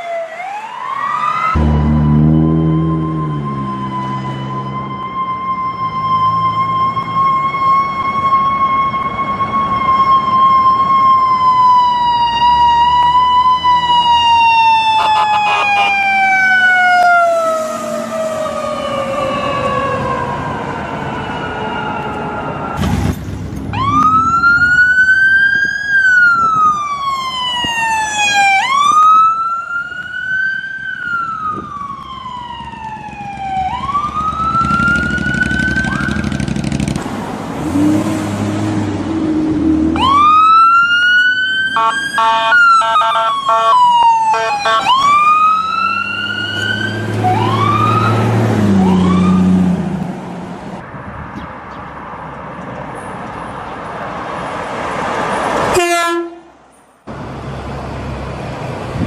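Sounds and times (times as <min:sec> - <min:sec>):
siren tone sliding down: 0:00.0 - 0:22.9, 0:23.7 - 0:36.5, 0:39.2 - 0:49.8
wail siren rising and falling: 0:00.0 - 0:23.0, 0:23.7 - 0:51.0.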